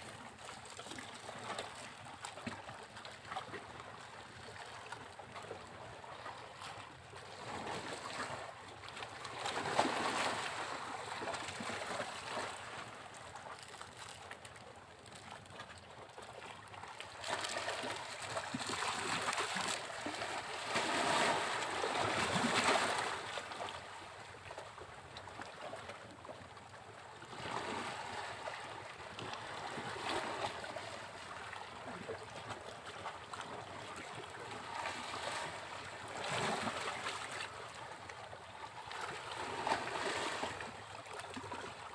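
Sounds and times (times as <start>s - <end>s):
sea waves breaking on beach: 9.2s - 14.2s, 17.0s - 23.9s, 39.1s - 41.9s.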